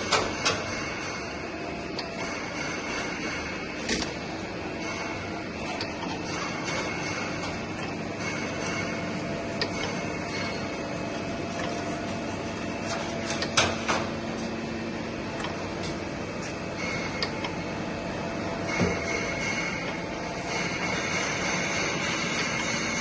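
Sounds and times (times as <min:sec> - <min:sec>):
sharp clicks and knocks: 0:00.0 - 0:12.1, 0:12.8 - 0:14.4, 0:15.3 - 0:17.8
grinding machine hum and whine: 0:00.0 - 0:23.0.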